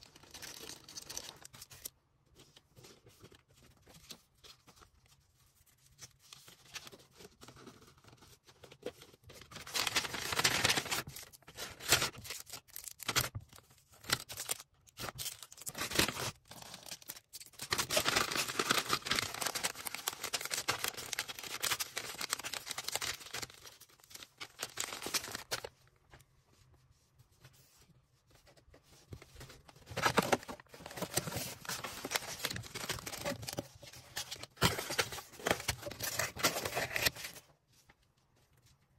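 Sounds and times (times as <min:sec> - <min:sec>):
plastic packaging crinkling: 0:09.5 - 0:25.7, 0:29.9 - 0:37.4.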